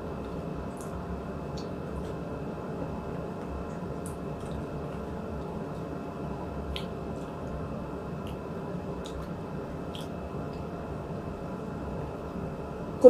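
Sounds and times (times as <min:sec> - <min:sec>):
low background hum: 0:00.0 - 0:13.0
wet chewing and mouth smacks: 0:00.2 - 0:02.2, 0:03.4 - 0:05.9, 0:06.6 - 0:10.7.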